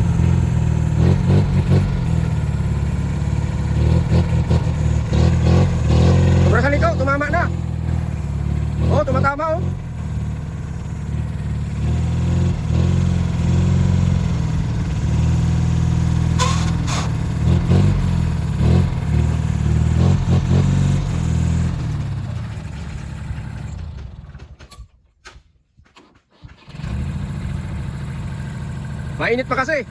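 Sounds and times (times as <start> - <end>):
engine rumbling: 0.0 - 29.9.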